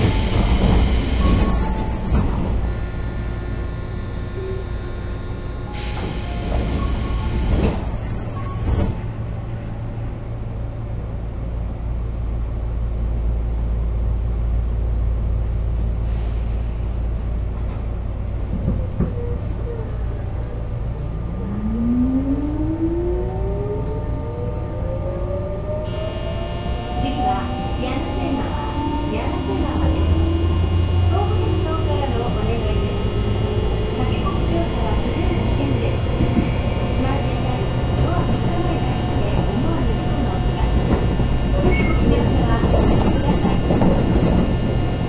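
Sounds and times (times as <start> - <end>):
train motor rising whine: 0.0 - 9.0, 20.6 - 45.0
train low hum: 0.0 - 45.0.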